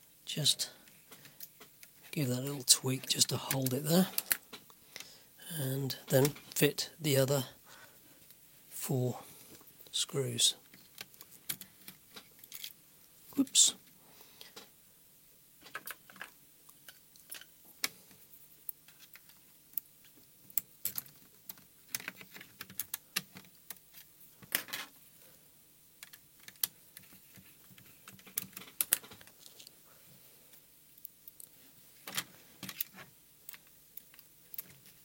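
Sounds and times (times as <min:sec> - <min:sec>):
small parts clicking: 0:03.4 - 0:05.1, 0:10.7 - 0:12.8, 0:15.6 - 0:18.0, 0:18.6 - 0:24.9, 0:26.0 - 0:29.7, 0:30.9 - 0:35.0.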